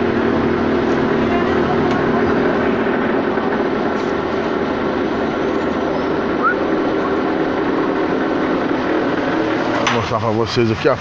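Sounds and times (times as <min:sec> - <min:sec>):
car lift motor and pump running: 0:00.0 - 0:11.0.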